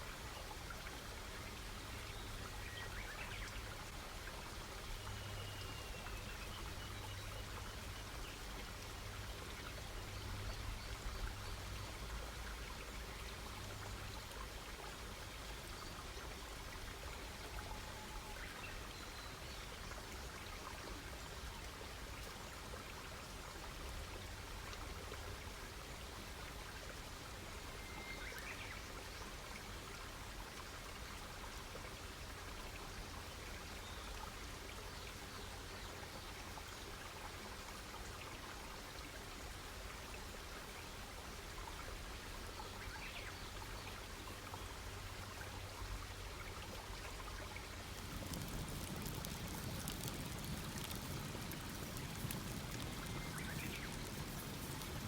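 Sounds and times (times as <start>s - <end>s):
campfire crackling: 47.7s - 55.0s.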